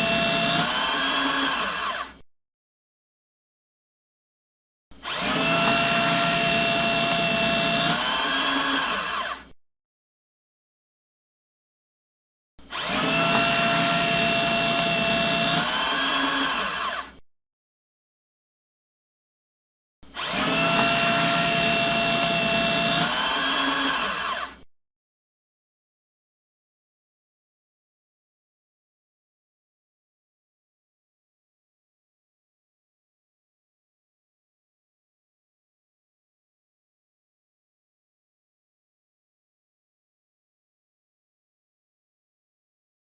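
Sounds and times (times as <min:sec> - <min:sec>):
electric paper shredder whining: 0:00.0 - 0:02.2, 0:05.0 - 0:09.6, 0:12.6 - 0:17.2, 0:20.0 - 0:24.7.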